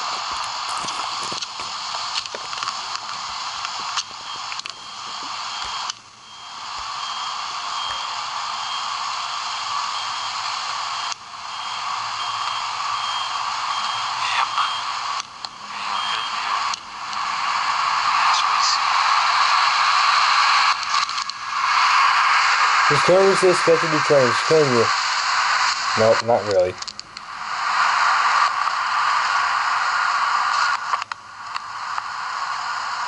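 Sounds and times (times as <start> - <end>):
static-like hiss: 0.0 - 33.0.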